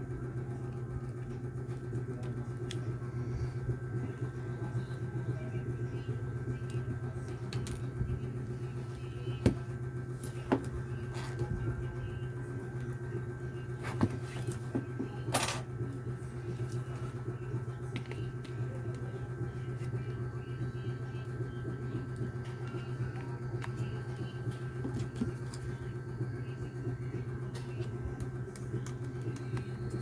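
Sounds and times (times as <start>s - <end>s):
low electrical hum: 0.0s - 30.0s
sharp small clicks and taps: 27.8s - 30.0s.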